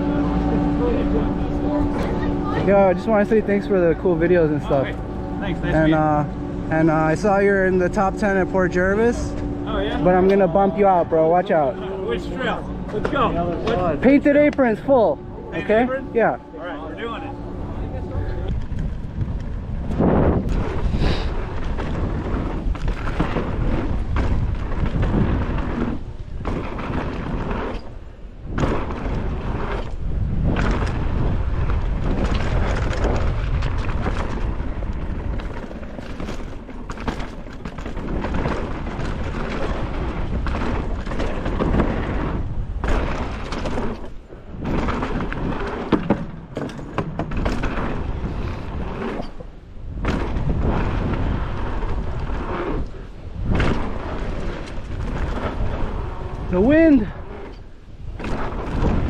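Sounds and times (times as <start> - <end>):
wind buffeting microphone: 0.0 - 59.0
mountain bike thuds and rattling: 18.6 - 59.0.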